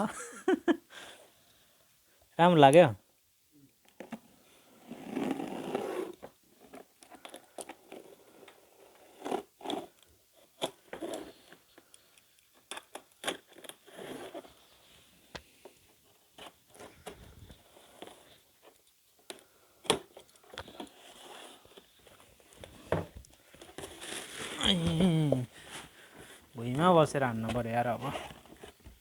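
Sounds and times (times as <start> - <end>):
cardboard rustling: 20.0 - 29.0.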